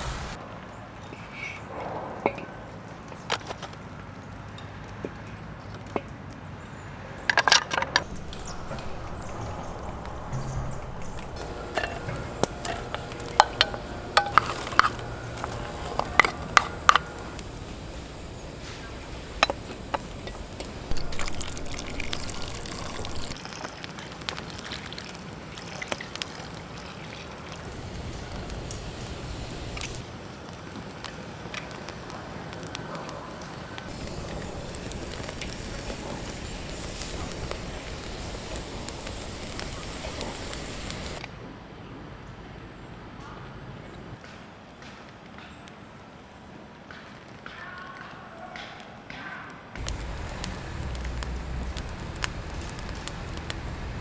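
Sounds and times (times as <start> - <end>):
rain dripping and trickling: 0.0 - 0.4, 8.0 - 41.2, 49.8 - 54.0.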